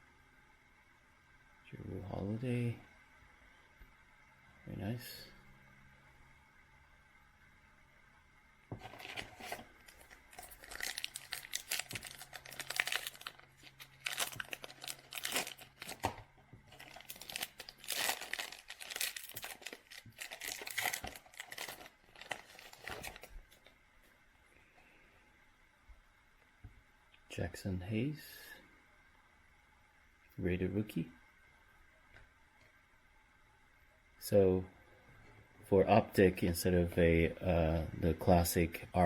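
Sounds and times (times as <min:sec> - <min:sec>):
foil wrapper crinkling: 0:08.8 - 0:23.7.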